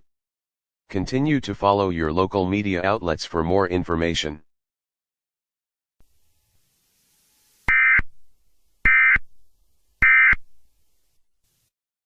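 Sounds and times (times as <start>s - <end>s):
digital data tone bursts: 6.4s - 8.1s, 8.8s - 9.2s, 10.0s - 10.4s.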